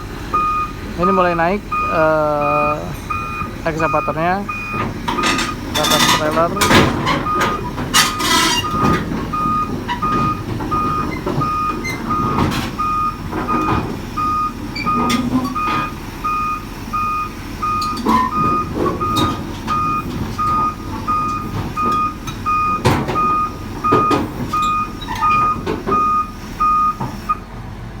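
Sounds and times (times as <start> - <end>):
excavator travel alarm beeping: 0.0 - 27.4
excavator engine: 0.0 - 28.0
sharp clanks of tracks: 4.7 - 14.0.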